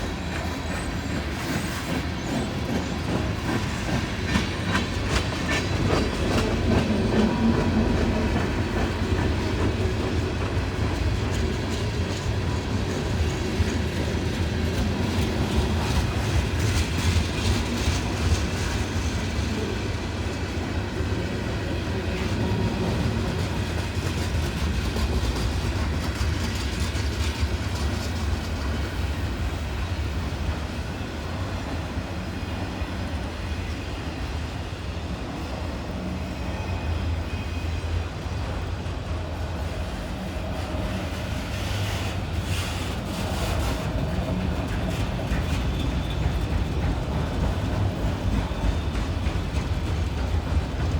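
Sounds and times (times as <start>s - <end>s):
freight train cars rumbling: 0.0s - 50.9s
wheels clacking over rail joints: 39.9s - 50.9s.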